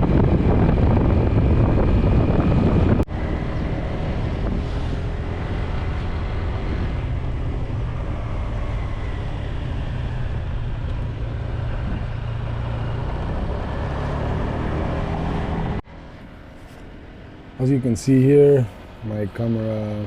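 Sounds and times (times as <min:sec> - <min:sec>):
wind noise on microphone: 0:00.0 - 0:15.8
engine running steadily: 0:00.0 - 0:20.0.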